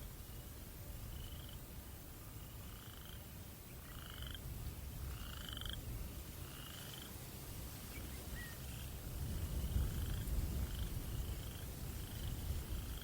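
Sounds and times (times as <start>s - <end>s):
low rumble of breeze: 0.0s - 13.0s
frogs trilling: 1.1s - 1.7s, 2.4s - 4.5s, 5.1s - 7.2s, 8.6s - 9.0s, 9.6s - 13.0s.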